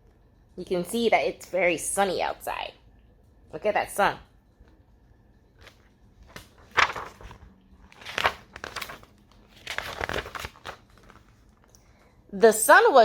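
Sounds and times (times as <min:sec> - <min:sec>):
book pages rustling: 0:05.5 - 0:11.8.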